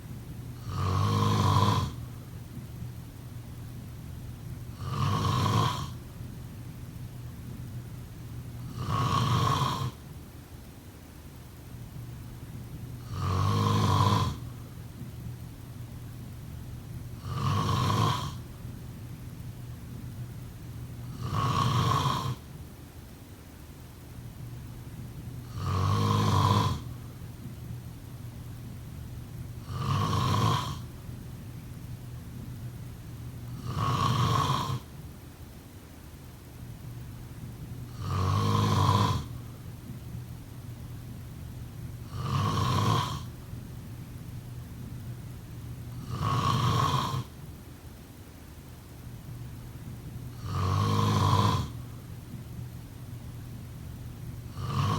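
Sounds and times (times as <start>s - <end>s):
steady low hum: 0.0s - 54.9s
person snoring: 0.6s - 2.0s, 4.8s - 6.0s, 8.7s - 10.0s, 13.0s - 14.4s, 17.2s - 18.4s, 21.1s - 22.4s, 25.5s - 26.9s, 29.6s - 30.9s, 33.5s - 34.9s, 37.9s - 39.4s, 42.0s - 43.3s, 46.0s - 47.3s, 50.3s - 51.8s, 54.5s - 54.9s.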